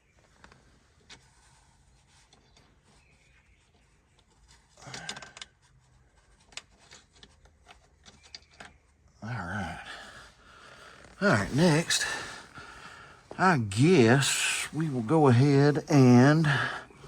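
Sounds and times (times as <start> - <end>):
clicking of metal parts and tools: 4.8 - 5.6.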